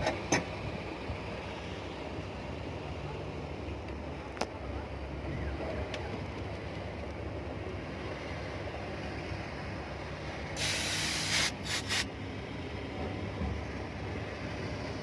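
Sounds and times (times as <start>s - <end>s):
pressurized spray hissing: 10.6s - 12.1s.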